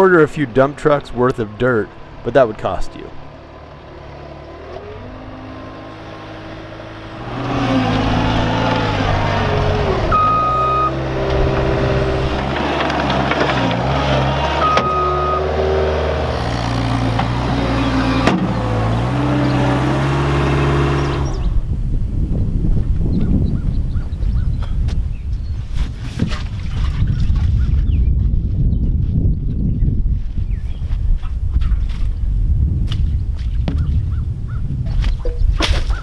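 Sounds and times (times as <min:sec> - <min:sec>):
diesel engine working: 0:00.0 - 0:23.6.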